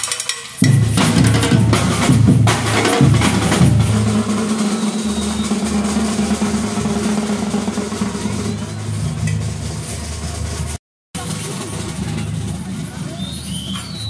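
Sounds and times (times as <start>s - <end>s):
heavy drum hits: 0.6s - 12.4s.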